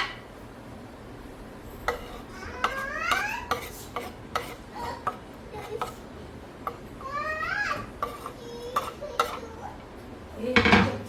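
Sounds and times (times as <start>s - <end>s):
utensil stirring in metal pot: 1.8s - 9.9s.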